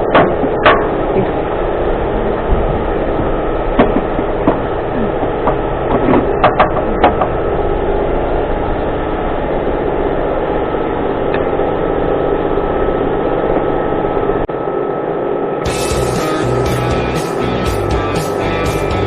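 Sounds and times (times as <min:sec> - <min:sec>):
car engine idling: 0:15.6 - 0:19.0.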